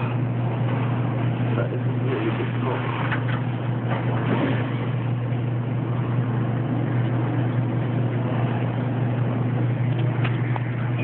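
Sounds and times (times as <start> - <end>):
low-pitched drone: 0.0 - 11.0.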